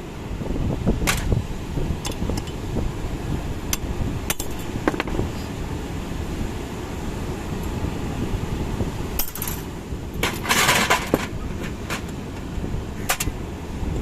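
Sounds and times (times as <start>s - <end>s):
steady low rumble: 0.0s - 14.0s
metal tools clinking: 9.2s - 12.1s
scraping rustle: 10.2s - 12.1s.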